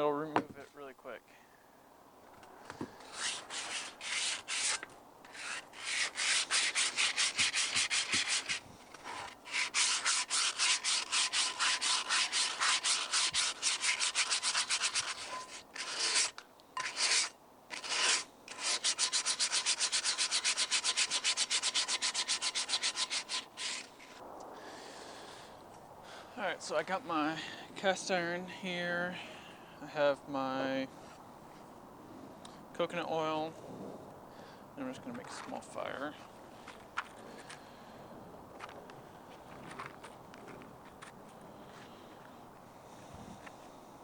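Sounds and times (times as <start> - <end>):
sandpaper rubbing on cast iron: 3.0 - 24.2.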